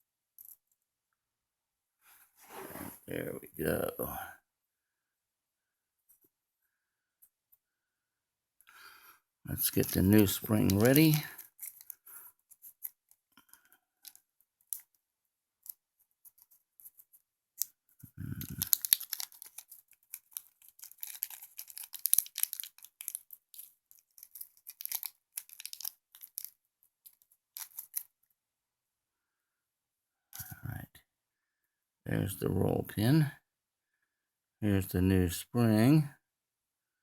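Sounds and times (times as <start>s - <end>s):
light clicks of small parts: 9.7s - 15.0s, 18.4s - 28.1s
plastic packaging crinkling and tearing: 18.2s - 26.5s.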